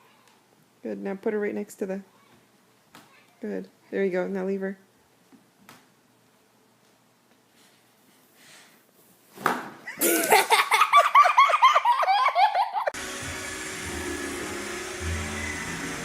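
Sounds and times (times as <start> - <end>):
steady hiss with low hum: 0.0 - 12.9
small child giggling: 9.9 - 13.0.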